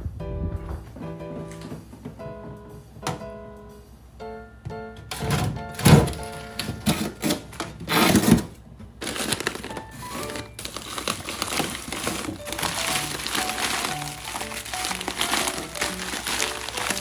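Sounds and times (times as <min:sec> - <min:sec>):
rustling: 0:06.1 - 0:17.0
background music: 0:09.2 - 0:17.0.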